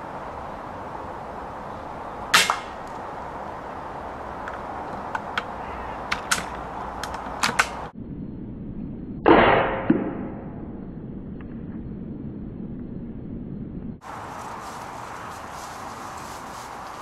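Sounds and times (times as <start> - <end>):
rifle shot: 2.3 - 2.8.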